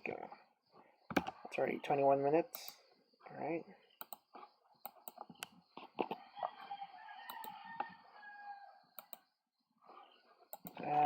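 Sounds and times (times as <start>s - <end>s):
computer mouse clicks: 1.1s - 1.4s, 4.0s - 6.2s, 7.3s - 7.9s, 9.0s - 9.2s, 10.5s - 10.9s
rooster crowing faintly: 6.2s - 9.1s.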